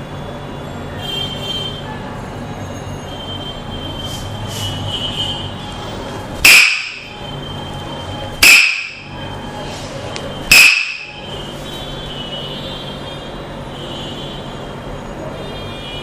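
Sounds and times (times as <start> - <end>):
wooden mallet knocking stick: 10.5 - 11.1.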